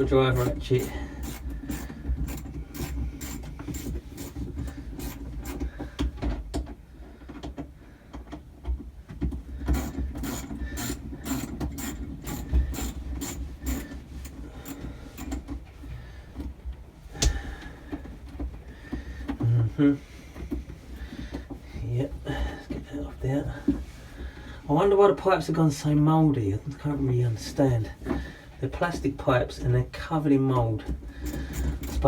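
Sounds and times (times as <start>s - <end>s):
ratchet clicking: 0.3s - 5.7s, 9.7s - 15.4s, 31.2s - 32.0s.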